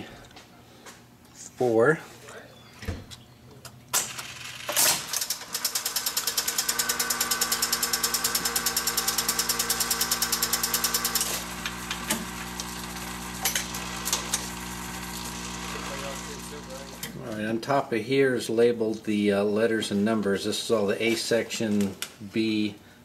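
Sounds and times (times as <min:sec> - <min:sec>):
fast regular mechanism clicking: 0:03.9 - 0:12.2
jukebox motor hum: 0:05.0 - 0:17.3.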